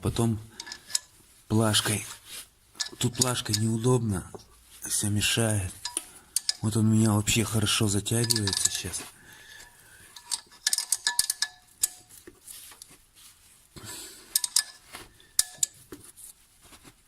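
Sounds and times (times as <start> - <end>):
wrench metallic clicks and clinks: 0.6 - 1.1, 2.8 - 3.8, 5.8 - 6.8, 7.5 - 9.0, 10.1 - 12.2, 14.3 - 15.8.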